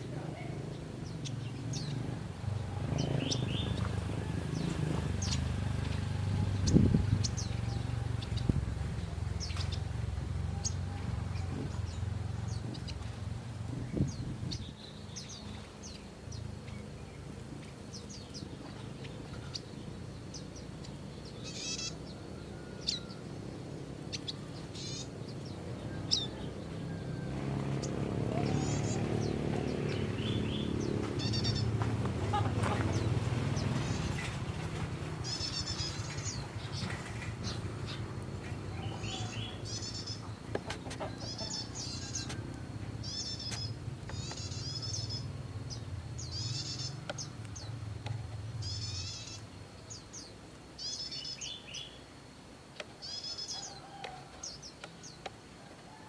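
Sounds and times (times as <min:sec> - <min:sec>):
birds chirping: 0:00.0 - 0:56.0.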